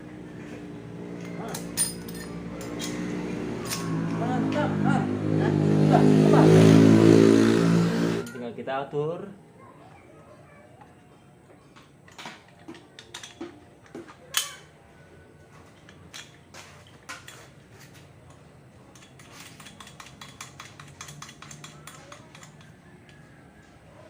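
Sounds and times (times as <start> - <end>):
metal clinks and knocks: 1.2 - 4.0, 11.8 - 14.8.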